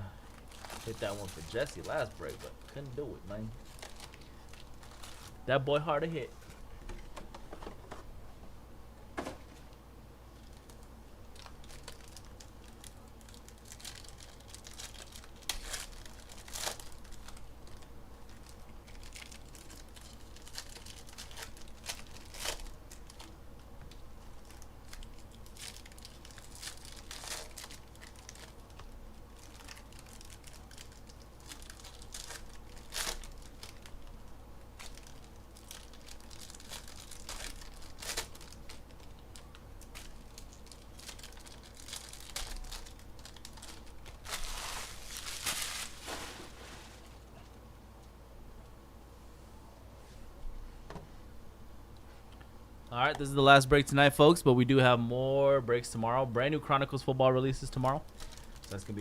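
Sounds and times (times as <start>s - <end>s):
plastic wrapping crinkling and tearing: 0.3s - 5.4s, 10.4s - 47.2s, 57.6s - 59.0s.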